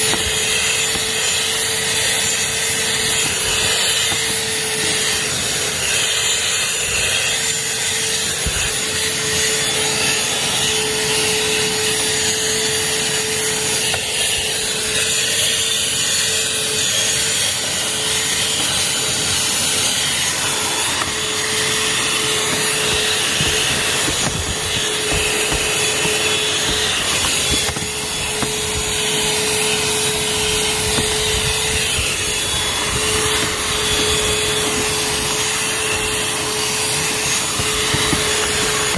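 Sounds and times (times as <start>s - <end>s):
handheld vacuum running: 0.0s - 38.9s.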